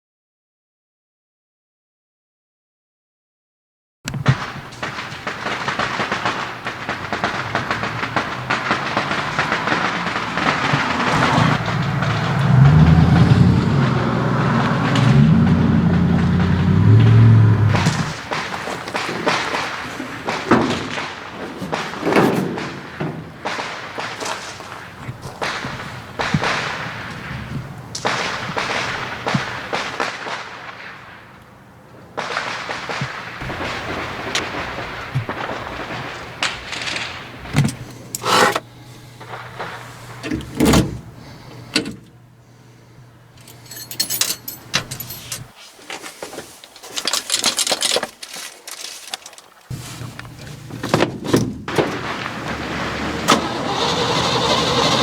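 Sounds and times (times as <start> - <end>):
steady low hum: 33.4 - 45.5
thumps in truck cab: 40.2 - 41.1
keys jangling: 43.4 - 45.6.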